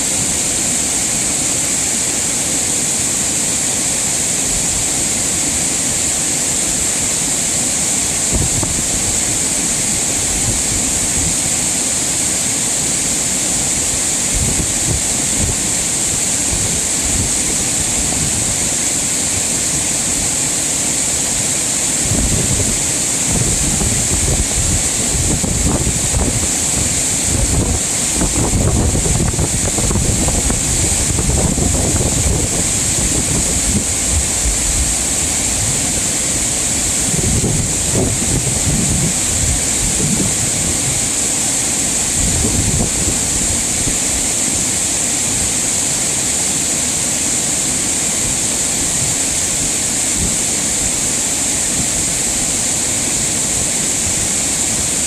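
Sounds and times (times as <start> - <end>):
stream rushing over rocks: 0.0 - 55.0
wind buffeting microphone: 8.2 - 12.4, 13.5 - 20.4, 21.2 - 44.8.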